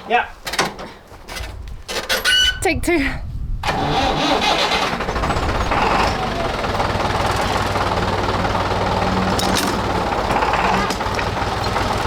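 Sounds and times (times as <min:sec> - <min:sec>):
tractor engine running: 0:03.6 - 0:12.0.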